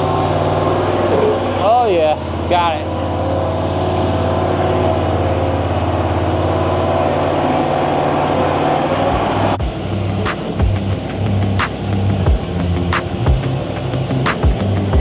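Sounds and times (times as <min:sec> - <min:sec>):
skid steer engine running: 0:00.0 - 0:15.0
background music with steady beat: 0:09.1 - 0:15.0.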